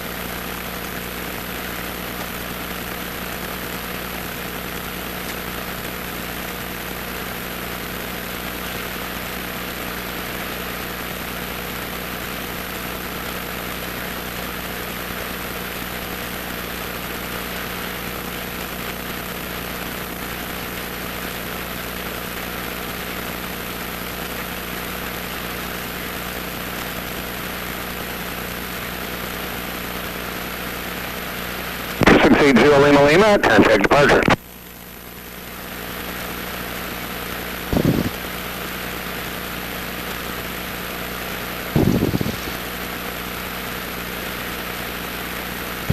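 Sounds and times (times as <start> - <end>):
steady rush of noise: 31.9 - 34.4, 37.6 - 38.4, 41.7 - 43.0.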